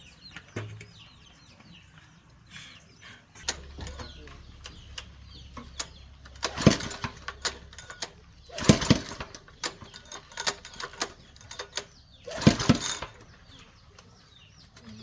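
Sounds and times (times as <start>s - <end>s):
recoil starter pulls cranking engine: 3.4s - 15.0s
small clicks and rattles: 3.4s - 15.0s.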